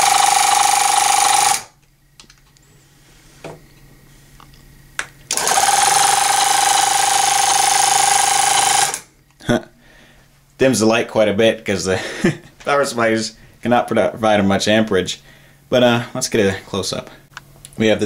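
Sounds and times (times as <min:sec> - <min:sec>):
tire inflator compressor humming: 0:00.0 - 0:01.8, 0:05.3 - 0:09.1.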